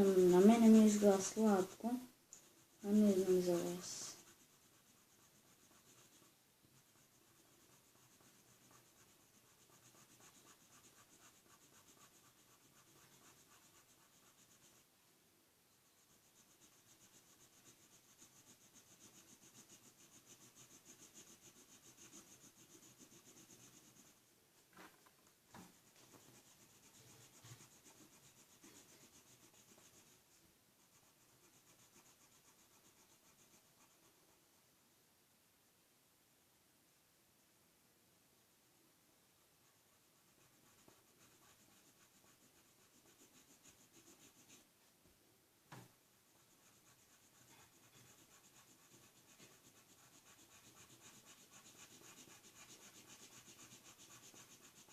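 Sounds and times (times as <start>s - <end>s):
marker scratching on paper: 0.0s - 14.9s, 15.9s - 24.2s, 25.6s - 34.5s, 39.6s - 44.7s, 46.3s - 54.9s.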